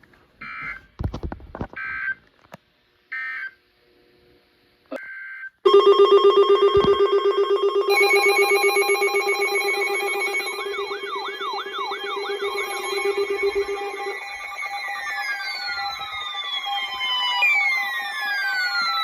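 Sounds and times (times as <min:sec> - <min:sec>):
rapidly pulsing alarm tone: 0:05.7 - 0:19.0
screeching digital data bursts: 0:09.2 - 0:19.0.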